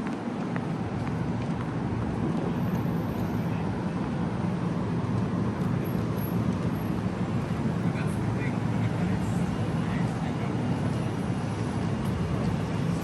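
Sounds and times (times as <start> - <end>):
vehicle low rumble: 0.0 - 13.0.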